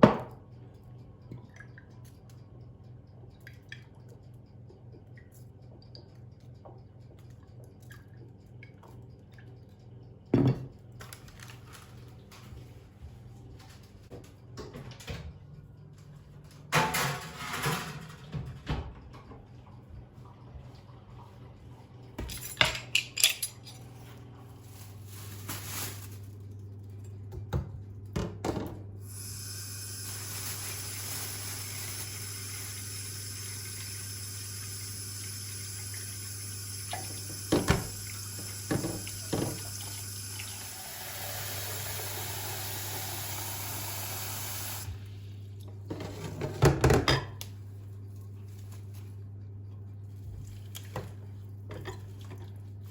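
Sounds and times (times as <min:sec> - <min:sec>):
wet clicks and drips: 0:00.6 - 0:10.3
dishes and cutlery clinking: 0:22.2 - 0:24.0
food handling noise: 0:22.9 - 0:27.2
kitchen tap running: 0:29.0 - 0:45.0.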